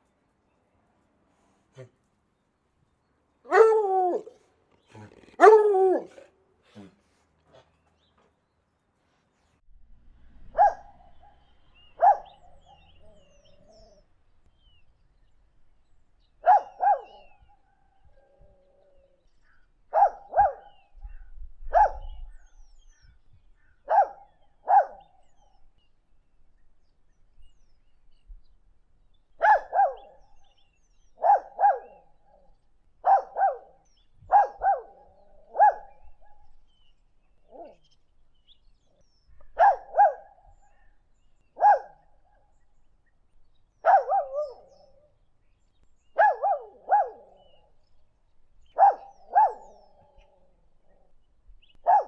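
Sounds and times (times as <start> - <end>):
dog barking: 3.5 - 3.8, 5.4 - 6.1, 10.5 - 11.4, 12.0 - 12.9, 16.4 - 17.2, 19.9 - 20.7, 21.7 - 22.2, 23.9 - 25.1, 29.4 - 30.1, 31.2 - 32.0, 33.0 - 33.7, 34.3 - 36.0, 39.6 - 40.3, 41.6 - 42.0, 43.8 - 44.6, 46.2 - 47.3, 48.8 - 49.9.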